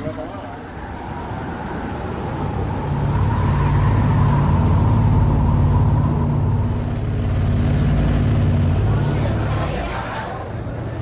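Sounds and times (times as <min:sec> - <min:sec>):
engine droning with high whine: 0:00.6 - 0:11.0.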